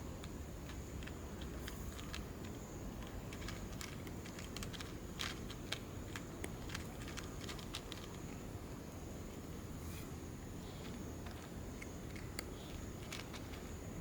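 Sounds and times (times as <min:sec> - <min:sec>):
cat chewing crunchy food: 0:00.6 - 0:08.5, 0:10.7 - 0:13.8.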